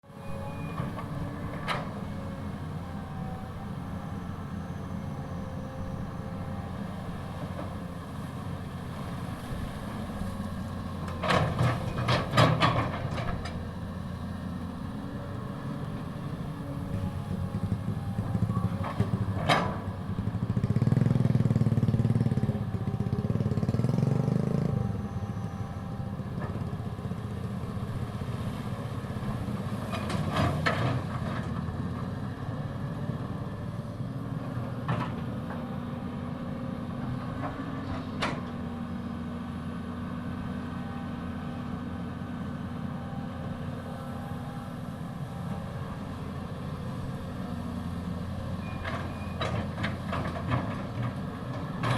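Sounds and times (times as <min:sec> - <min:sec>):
excavator diesel engine running: 0:00.1 - 0:51.9.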